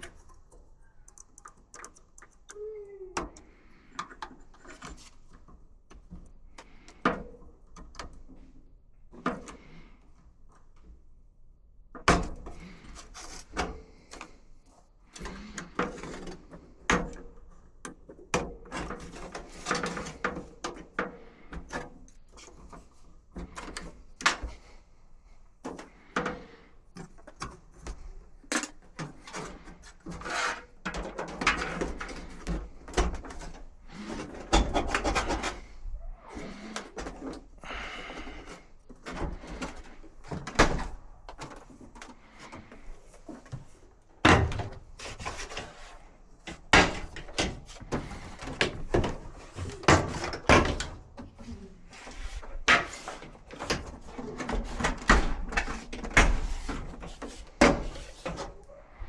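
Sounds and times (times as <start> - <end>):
knocks and clatter of parts: 15.1 - 24.8, 25.4 - 58.7.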